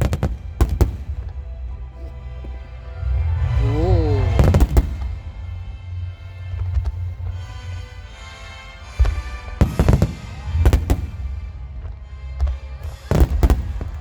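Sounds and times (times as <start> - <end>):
music: 0.0 - 14.0
firework shells bursting: 4.3 - 5.6, 8.9 - 11.6, 12.9 - 14.0.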